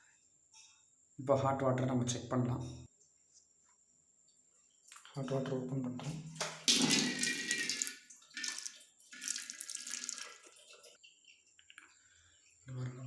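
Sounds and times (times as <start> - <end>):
hot water running from a tap: 6.4 - 11.0.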